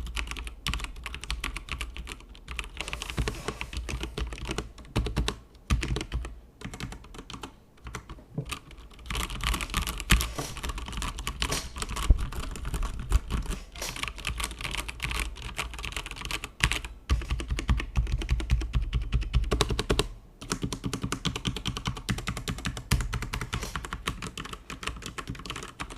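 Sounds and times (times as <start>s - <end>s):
mechanical keyboard typing: 0.0s - 25.9s.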